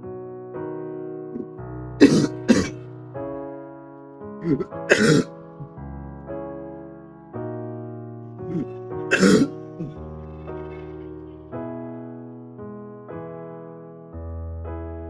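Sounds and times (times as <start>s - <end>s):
soft piano music: 0.0s - 4.7s, 5.3s - 15.0s
person coughing hard: 1.4s - 2.8s, 4.4s - 5.3s, 8.5s - 10.0s.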